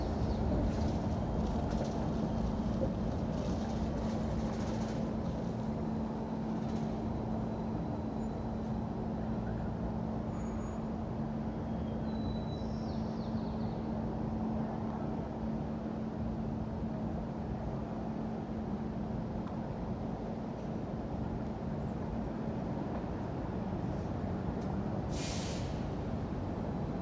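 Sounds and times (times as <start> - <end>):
low rumble of passing vehicles: 0.0 - 10.2.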